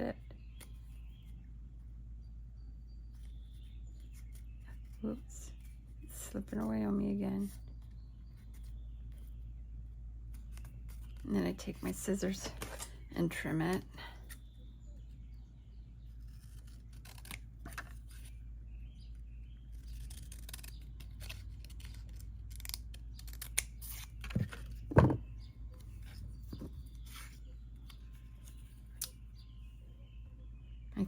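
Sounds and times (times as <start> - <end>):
scissors snipping paper: 16.4 - 18.0, 19.8 - 24.4.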